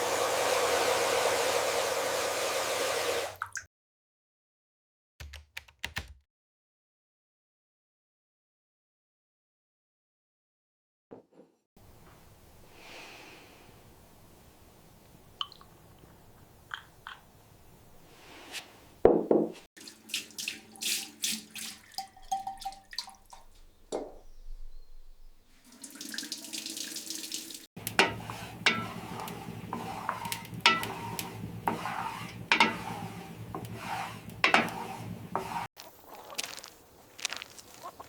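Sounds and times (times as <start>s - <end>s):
tap water splashing in sink: 3.2s - 3.7s, 19.8s - 24.1s, 25.7s - 31.3s
dishes knocking and clattering: 27.8s - 35.6s.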